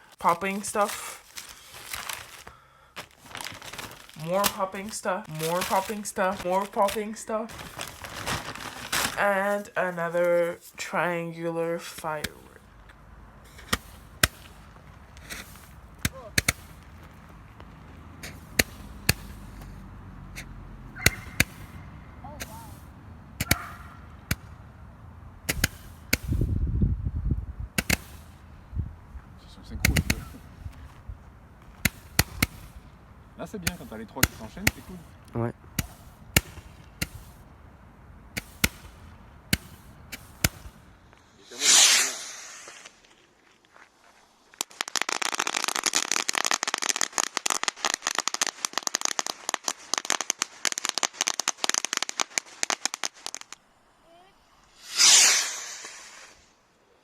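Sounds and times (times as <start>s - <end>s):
fireworks bangs: 3.2s - 26.8s, 27.7s - 43.4s, 44.4s - 53.6s, 54.6s - 56.6s
firework hiss: 13.4s - 24.6s, 25.5s - 26.8s, 27.7s - 28.5s, 29.8s - 30.9s, 31.8s - 37.6s, 38.3s - 43.4s, 44.0s - 57.0s.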